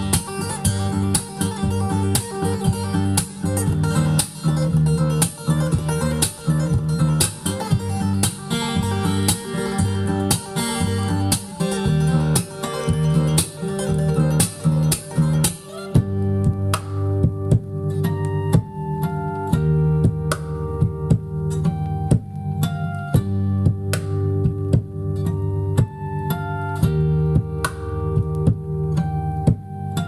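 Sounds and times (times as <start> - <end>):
strummed guitar music from vinyl: 0.0 - 30.0.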